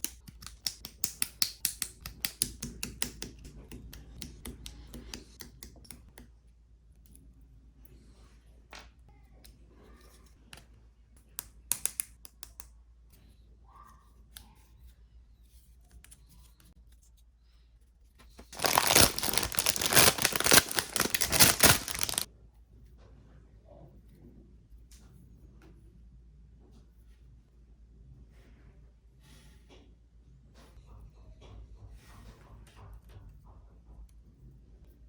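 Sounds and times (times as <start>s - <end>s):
plastic packaging crinkling and tearing: 18.4s - 22.3s.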